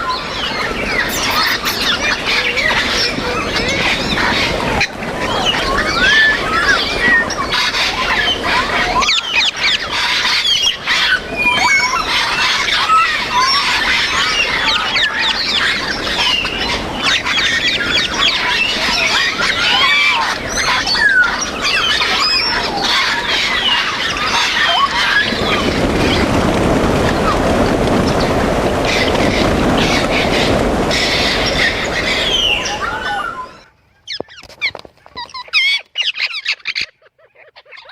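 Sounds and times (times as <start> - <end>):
parrots squawking and whistling: 0.9 - 3.6, 9.0 - 25.5, 30.9 - 37.9.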